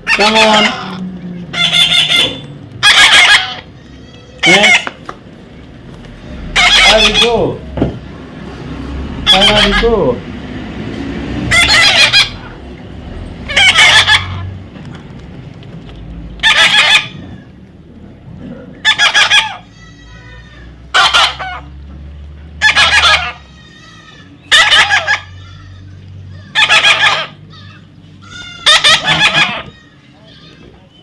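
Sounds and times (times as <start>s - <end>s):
parrot screeching: 0.0s - 5.0s, 6.4s - 7.6s, 9.2s - 10.2s, 11.5s - 12.6s, 13.4s - 14.6s, 16.4s - 17.5s, 18.8s - 21.8s, 22.6s - 30.7s.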